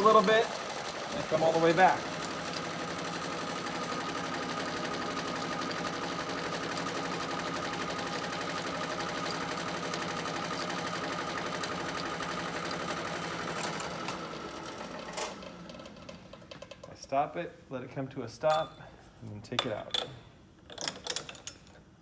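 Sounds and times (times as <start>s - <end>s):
milling machine cutting: 0.0s - 16.1s.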